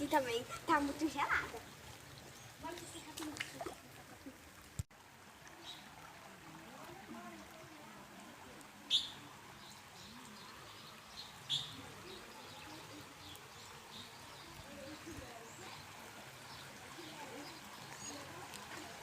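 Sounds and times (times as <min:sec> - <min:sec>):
bird chirping: 0:08.9 - 0:14.9.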